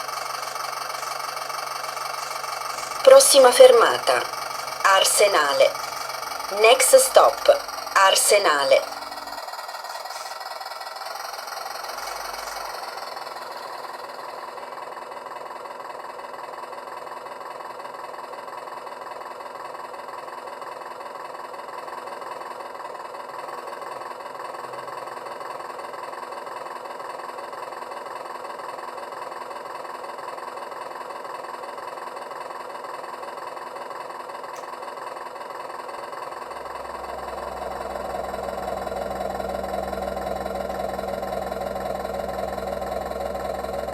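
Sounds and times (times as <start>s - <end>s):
low hum: 0.0s - 14.8s, 36.0s - 43.9s
model boat motor drone: 0.0s - 15.5s, 35.1s - 43.9s.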